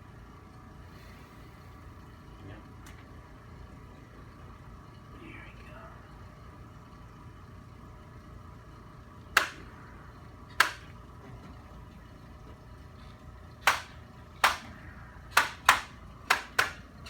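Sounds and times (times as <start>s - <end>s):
sharp smacks: 9.4s - 9.7s, 10.6s - 10.9s, 13.7s - 14.7s, 15.3s - 16.8s.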